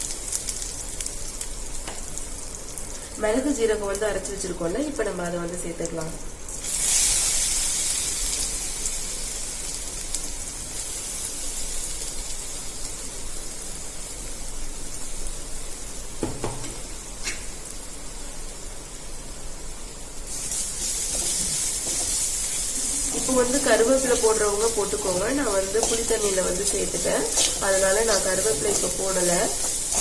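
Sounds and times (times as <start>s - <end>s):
spices sizzling in hot oil: 0.0s - 30.0s
utensil knocking on pan: 16.2s - 16.8s.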